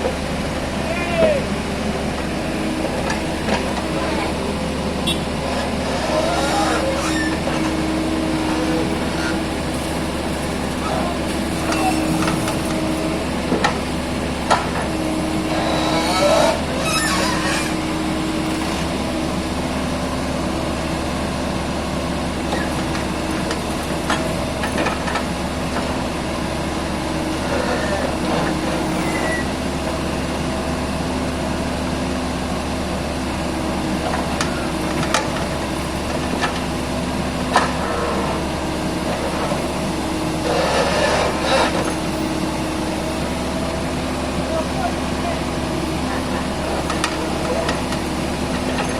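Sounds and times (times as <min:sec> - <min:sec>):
whining tone: 0:00.0 - 0:20.2
excavator diesel engine running: 0:00.0 - 0:48.9.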